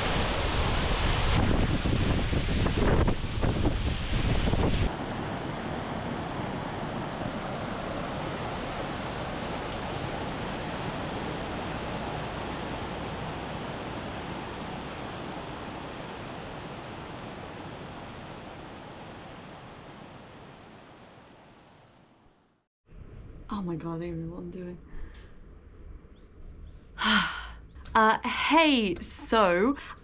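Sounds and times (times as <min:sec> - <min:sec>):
waterfall rushing: 0:00.0 - 0:20.4.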